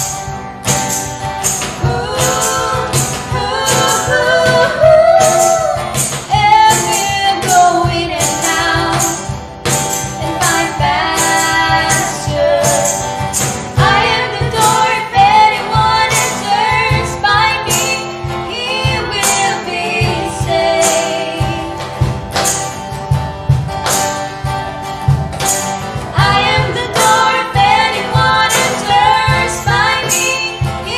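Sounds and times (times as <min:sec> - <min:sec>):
woman singing over beat: 0:01.8 - 0:09.3, 0:10.2 - 0:13.2, 0:13.8 - 0:22.0, 0:26.1 - 0:30.9.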